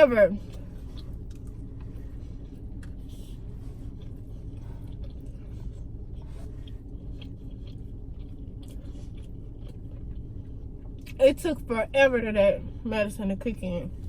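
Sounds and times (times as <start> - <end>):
steady low hum: 0.0 - 14.0
person chewing food: 0.4 - 11.1.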